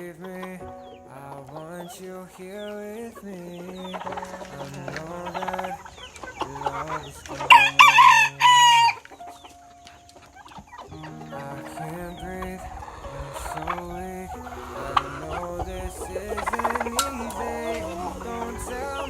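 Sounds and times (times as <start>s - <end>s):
chickens clucking: 0.0s - 19.0s
rooster crowing: 7.5s - 9.0s.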